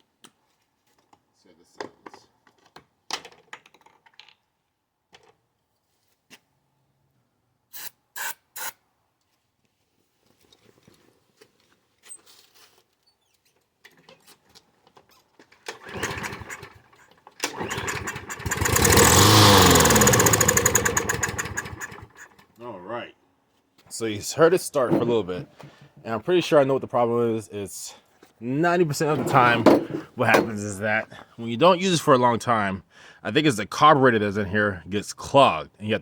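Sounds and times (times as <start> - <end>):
lawn mower engine starting and running: 15.6 - 22.6, 29.0 - 30.6.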